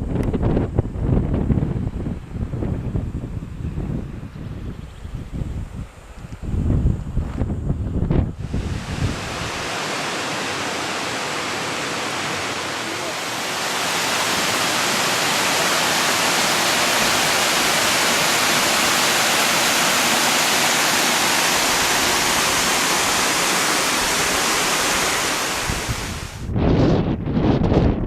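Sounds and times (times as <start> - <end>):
wind buffeting microphone: 0.0 - 9.8, 24.0 - 28.0
waterfall rushing into a pool: 8.4 - 26.4.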